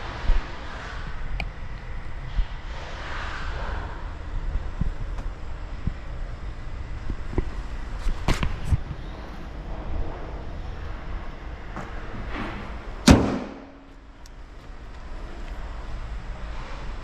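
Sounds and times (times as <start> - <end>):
low background noise: 0.0 - 17.0
loud ringing slam: 13.0 - 13.9.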